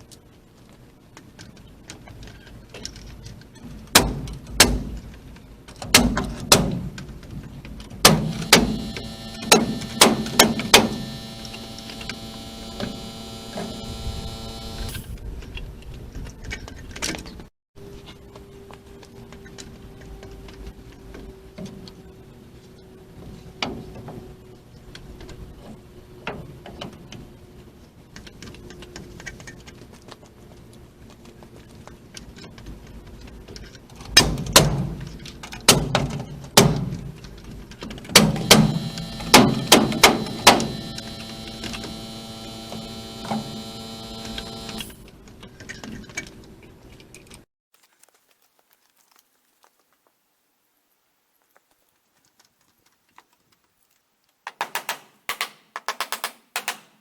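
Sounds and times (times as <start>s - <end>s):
building work knocks and bangs: 5.8s - 8.4s
ringing tone: 8.3s - 15.0s, 38.4s - 45.0s.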